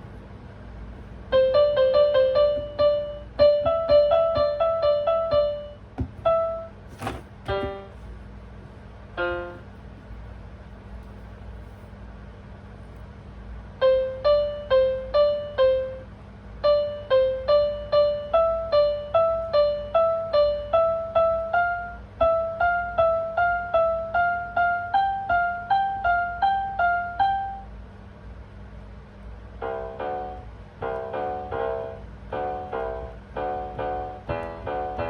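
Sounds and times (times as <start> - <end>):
faint steady hum: 0.0 - 35.0
piano single notes: 1.3 - 8.1, 29.6 - 35.0.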